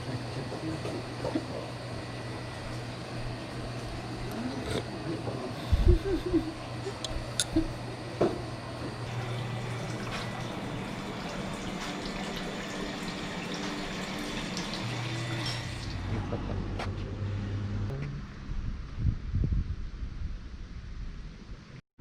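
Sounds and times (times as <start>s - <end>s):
water rushing: 9.1s - 16.1s.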